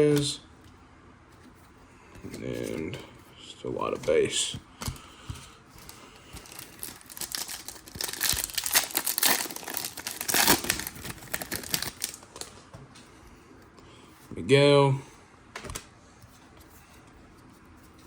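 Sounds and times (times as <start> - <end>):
foil wrapper crinkling and tearing: 5.8 - 12.5.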